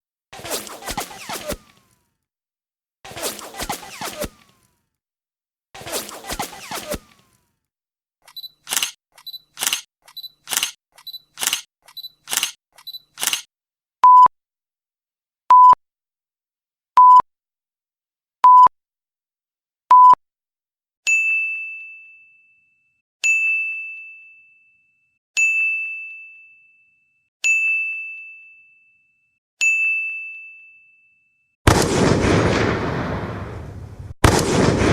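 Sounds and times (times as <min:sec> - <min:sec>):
camera shutter clicks: 0:08.2 - 0:13.5
bell dings: 0:21.1 - 0:22.6, 0:23.2 - 0:24.8, 0:25.4 - 0:29.0, 0:29.6 - 0:31.5.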